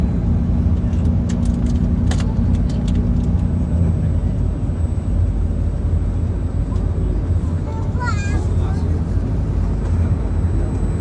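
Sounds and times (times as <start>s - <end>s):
bus engine and road rumble: 0.0s - 11.0s
droning hum: 0.0s - 11.0s
light rattling clicks: 0.7s - 3.5s.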